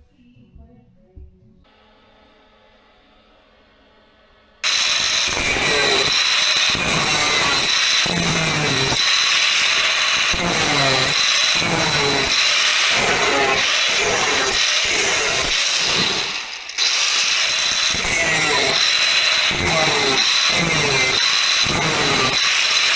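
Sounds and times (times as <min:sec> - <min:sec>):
power tool whining: 0:04.6 - 0:22.9.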